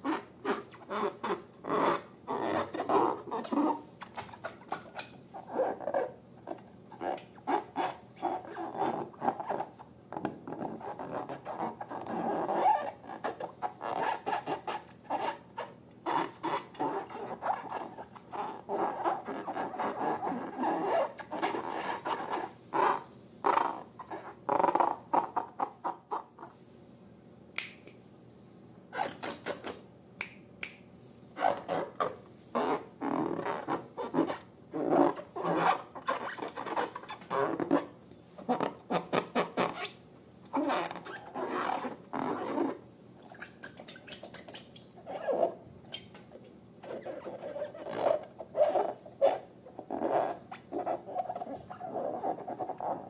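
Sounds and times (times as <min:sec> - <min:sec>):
sharp click: 0:27.6 - 0:28.0.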